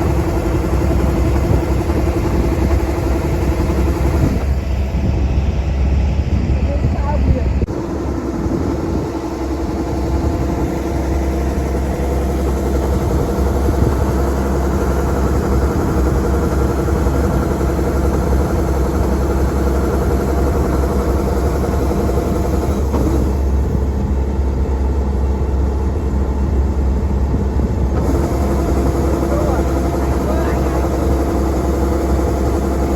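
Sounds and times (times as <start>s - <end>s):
heavy engine droning: 0.0s - 32.9s.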